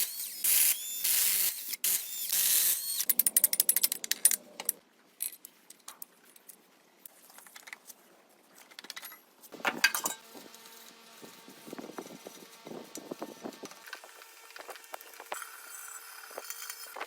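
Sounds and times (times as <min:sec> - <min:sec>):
metal parts and tools clinking: 0:08.8 - 0:10.3.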